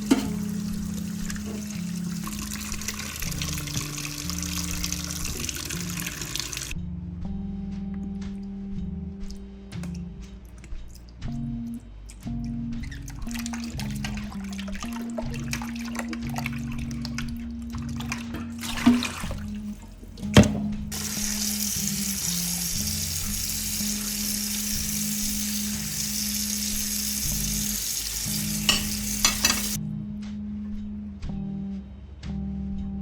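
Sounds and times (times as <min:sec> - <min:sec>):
guitar music: 0:00.0 - 0:06.7
sharp knocks: 0:20.3 - 0:20.9
steady hiss: 0:21.0 - 0:29.8.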